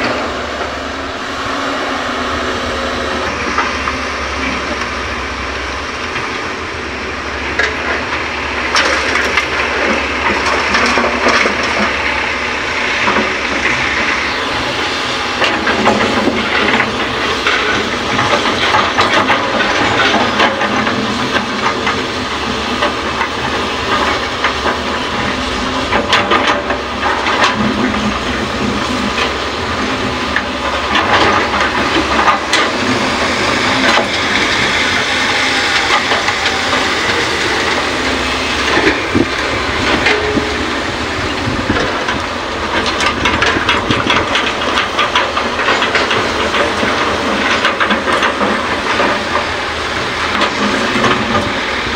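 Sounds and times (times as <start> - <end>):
excavator engine and hydraulics: 0.0 - 51.9
knocks and rattles: 38.7 - 49.5.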